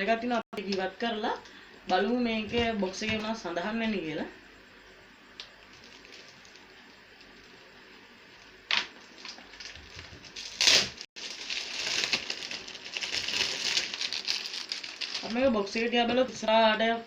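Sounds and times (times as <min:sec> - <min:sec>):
packaging rustling and crinkling: 0:05.7 - 0:07.5, 0:09.0 - 0:15.7.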